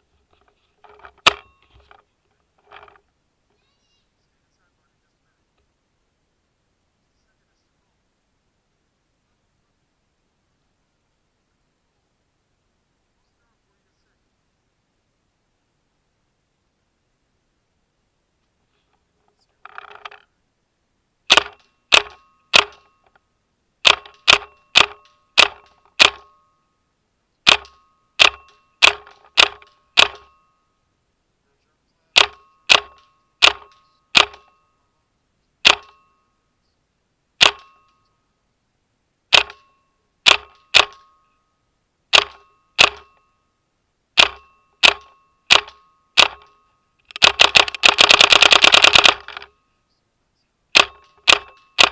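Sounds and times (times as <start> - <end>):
paintball marker firing: 21.3 - 22.8, 23.8 - 26.3, 27.5 - 30.3, 32.2 - 34.4, 40.3 - 41.0, 42.1 - 43.0, 47.1 - 49.5, 50.8 - 51.9.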